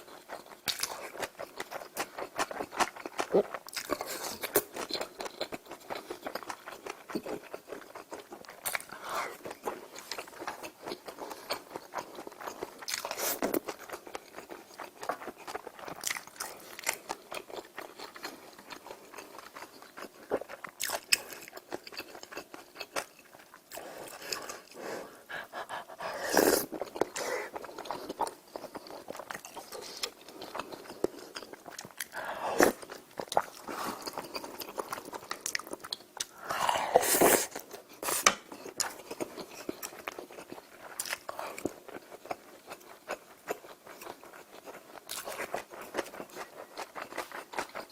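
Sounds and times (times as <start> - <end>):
person chewing food: 0.0 - 47.9.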